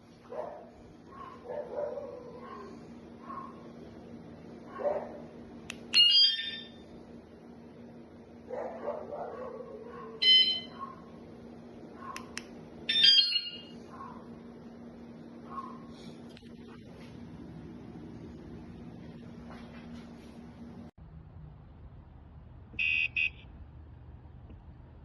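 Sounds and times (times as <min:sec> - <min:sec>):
steady low hum: 0:00.0 - 0:25.0
electronic alarm blasts: 0:05.9 - 0:06.9, 0:10.2 - 0:11.0, 0:12.9 - 0:13.8, 0:22.8 - 0:23.4.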